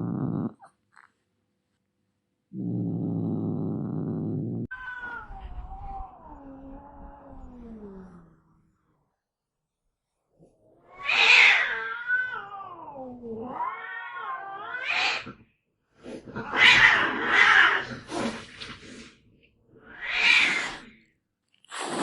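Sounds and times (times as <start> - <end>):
cat yowling: 10.9 - 15.3
cat hissing: 14.7 - 15.4, 19.8 - 21.0, 21.6 - 22.0.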